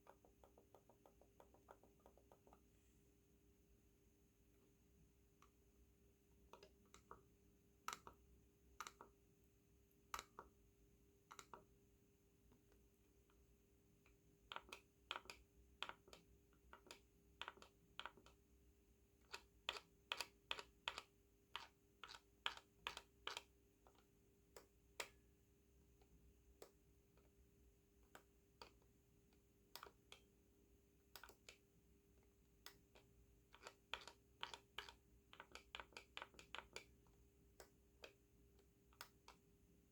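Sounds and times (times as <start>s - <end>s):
soft mouse clicks: 0.0s - 2.9s, 6.5s - 9.2s, 10.1s - 10.6s, 11.2s - 11.7s, 14.0s - 18.4s, 19.2s - 25.3s, 25.9s - 27.4s, 28.0s - 30.4s, 31.0s - 39.9s
faint steady hum: 0.0s - 39.9s.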